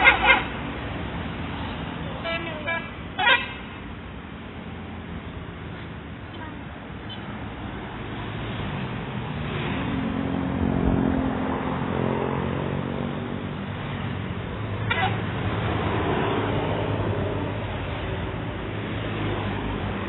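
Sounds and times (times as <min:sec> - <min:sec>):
bus horn playing a tune: 0:00.0 - 0:00.6, 0:02.2 - 0:03.8, 0:14.9 - 0:15.2.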